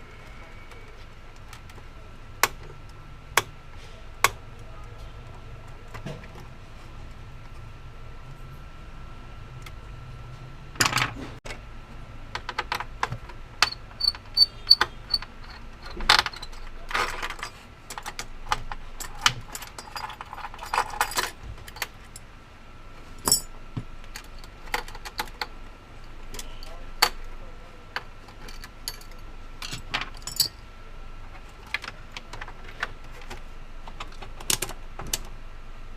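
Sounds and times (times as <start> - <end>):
small parts and tools clinking: 12.3 - 22.3, 23.2 - 35.3.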